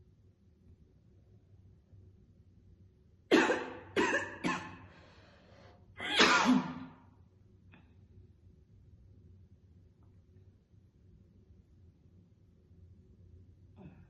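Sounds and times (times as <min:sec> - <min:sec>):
woman coughing: 0:03.3 - 0:04.8, 0:06.0 - 0:06.9.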